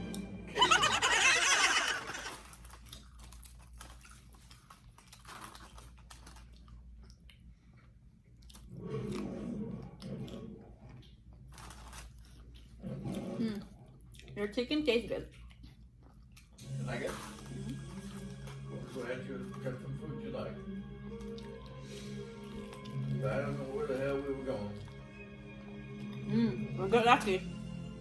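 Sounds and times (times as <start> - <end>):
crunchy chewing: 1.4 - 14.4.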